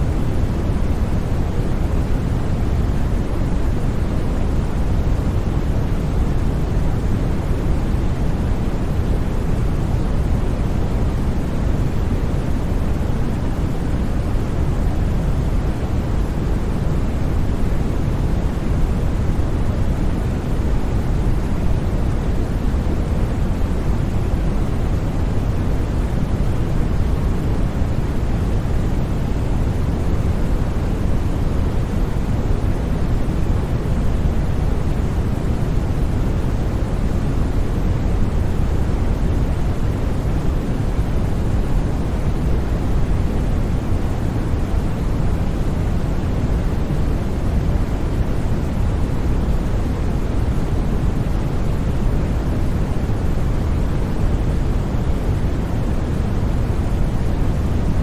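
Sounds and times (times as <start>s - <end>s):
deep white noise rush: 0.0s - 58.0s.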